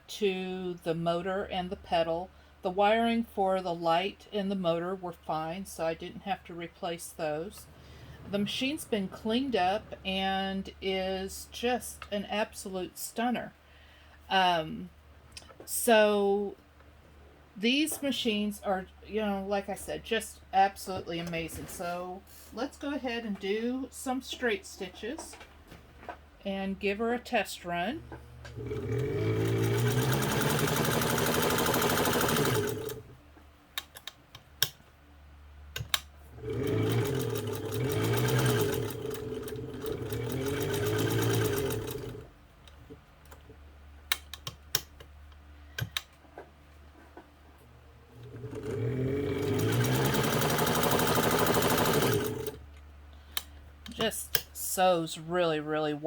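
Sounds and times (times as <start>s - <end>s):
sewing machine running: 28.0s - 33.2s, 36.3s - 42.3s, 48.1s - 52.6s.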